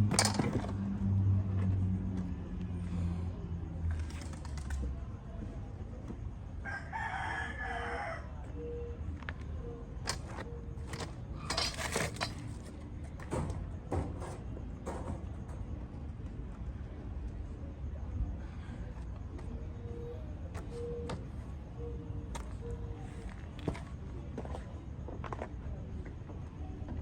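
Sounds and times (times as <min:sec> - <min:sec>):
rooster crowing: 0:06.6 - 0:08.7.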